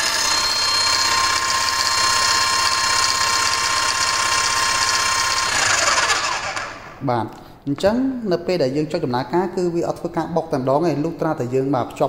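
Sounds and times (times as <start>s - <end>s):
demolition hammer motor whining: 0.0s - 7.0s.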